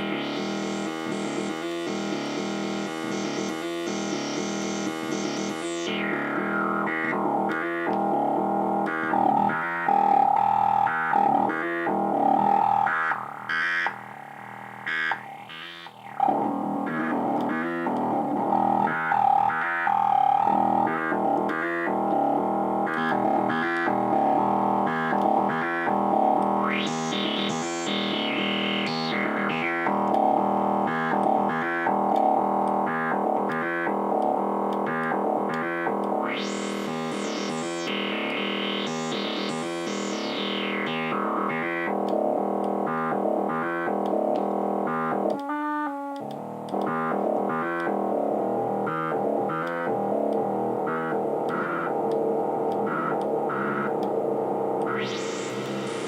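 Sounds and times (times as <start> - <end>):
synthesizer repeated notes and chords: 0.0 - 56.0.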